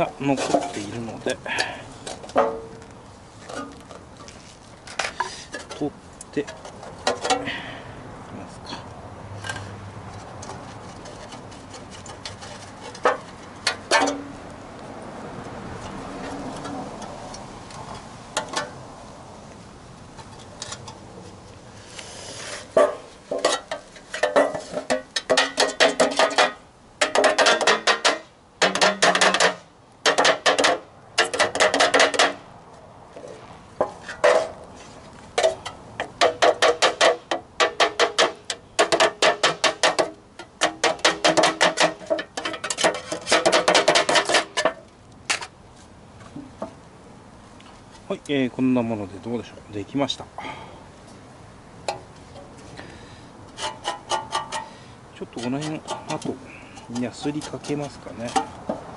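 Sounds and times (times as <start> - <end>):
metal scraping on steel can: 4.9 - 5.8, 33.9 - 45.5, 53.5 - 58.6.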